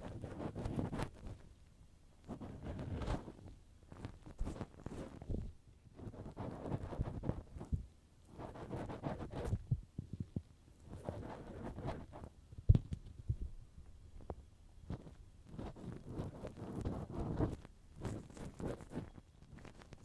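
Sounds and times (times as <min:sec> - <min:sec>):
tools scraping on microphone: 0:02.2 - 0:12.3, 0:14.9 - 0:20.0.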